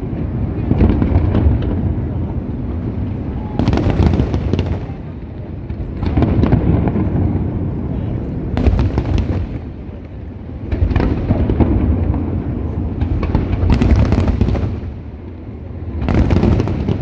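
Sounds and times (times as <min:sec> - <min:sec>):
deep rumble of booms: 0:00.0 - 0:09.9
fireworks bangs and crackle: 0:00.0 - 0:17.0.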